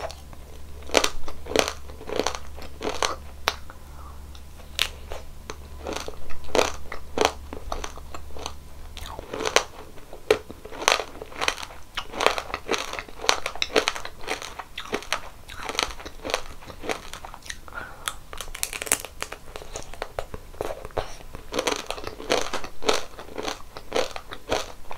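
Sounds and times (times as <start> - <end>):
crunching and chewing ice cream: 0.0 - 24.9.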